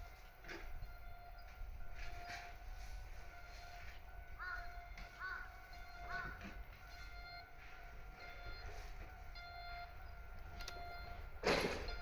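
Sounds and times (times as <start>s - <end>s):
crow cawing: 4.4s - 6.4s.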